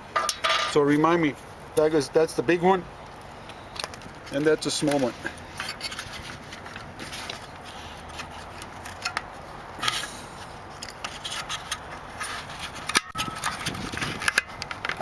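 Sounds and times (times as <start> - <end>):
plastic parts clicking and rubbing: 10.8 - 15.0.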